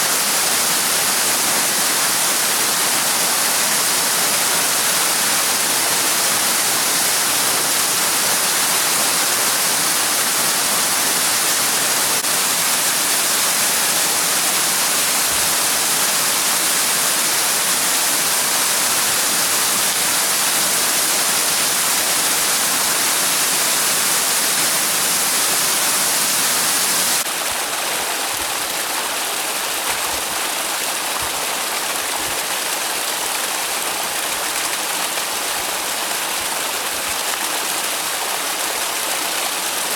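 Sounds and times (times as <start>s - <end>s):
waterfall rushing: 0.0s - 27.4s.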